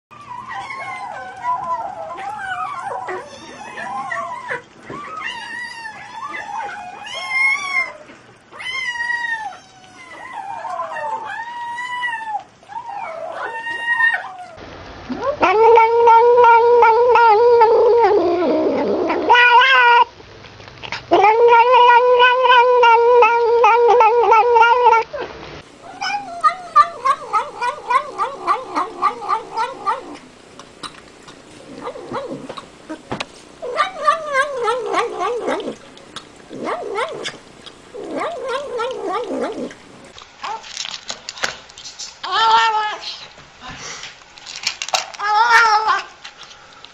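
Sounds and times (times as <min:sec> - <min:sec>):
cat yowling and meowing: 0:00.1 - 0:14.6, 0:15.2 - 0:20.1, 0:21.1 - 0:25.1, 0:25.8 - 0:30.2, 0:33.6 - 0:35.8, 0:36.6 - 0:37.4, 0:38.0 - 0:39.7, 0:45.2 - 0:46.1.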